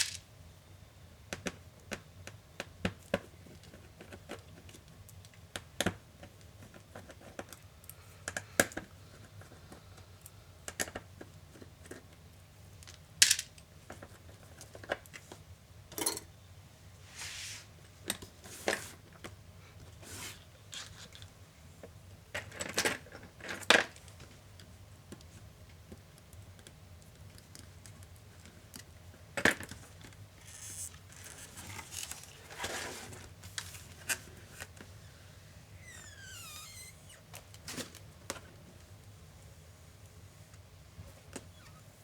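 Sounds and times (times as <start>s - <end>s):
clicks and taps of small pieces: 1.3s - 7.6s
scrapes and rustles: 30.4s - 34.9s.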